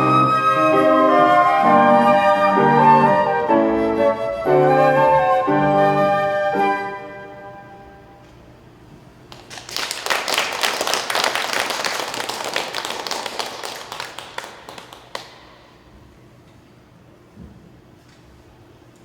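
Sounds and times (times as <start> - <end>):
flute and piano piece: 0.0 - 8.2
audience applauding: 9.3 - 15.8.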